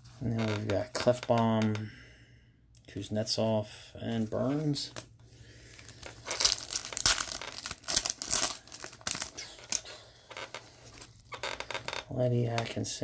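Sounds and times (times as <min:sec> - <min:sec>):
plastic wrapper crinkling: 0:05.6 - 0:12.0.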